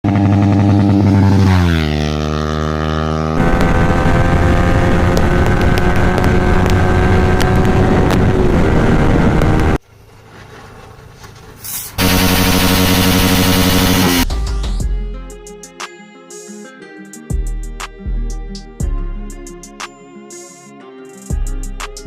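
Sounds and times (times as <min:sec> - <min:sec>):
motorcycle engine running: 0:00.0 - 0:09.8, 0:12.0 - 0:14.3.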